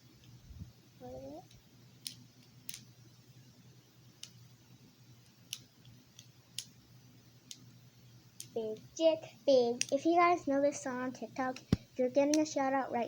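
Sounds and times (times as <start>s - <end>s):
plastic fidget segments clicking: 1.4s - 2.9s, 5.4s - 6.8s, 7.4s - 7.7s, 8.4s - 8.9s, 9.7s - 10.2s.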